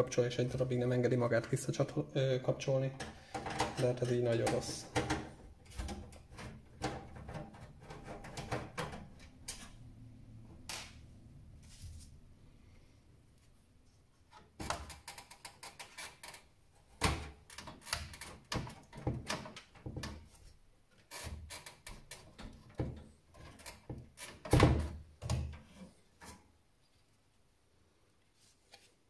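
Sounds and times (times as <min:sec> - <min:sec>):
knocks and clicks of computer parts: 0:03.0 - 0:09.6.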